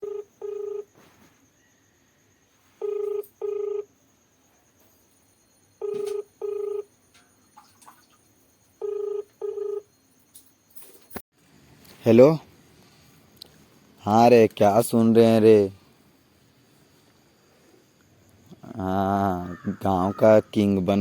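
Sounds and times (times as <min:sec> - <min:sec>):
telephone ringback double beeps: 0:02.8 - 0:03.9, 0:05.8 - 0:06.9, 0:08.8 - 0:09.9.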